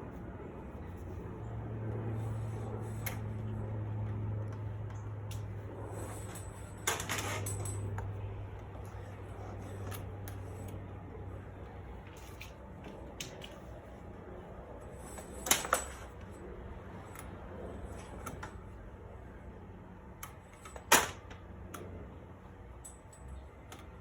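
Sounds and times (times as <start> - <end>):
steady low hum: 0.0 - 24.0
metallic clatter: 5.4 - 10.6.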